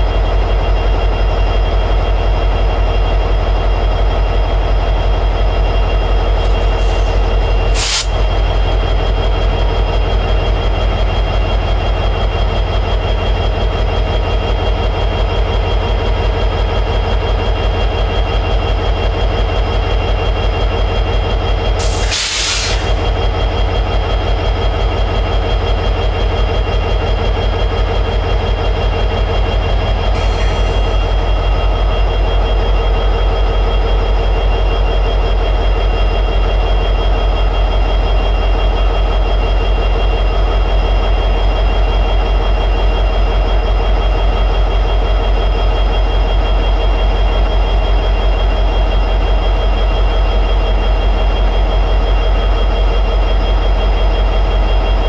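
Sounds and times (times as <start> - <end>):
diesel locomotive engine idling: 0.0 - 55.0
air hiss burst: 6.8 - 8.2, 21.8 - 23.0.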